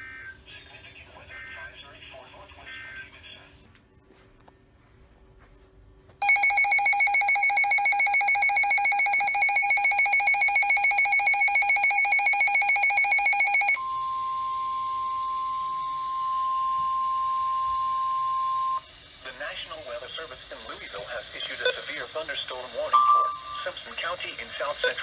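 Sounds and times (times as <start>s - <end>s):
pulsing electronic alarm: 6.2s - 19.2s
steady high alarm tone: 6.2s - 19.2s, 22.9s - 23.7s.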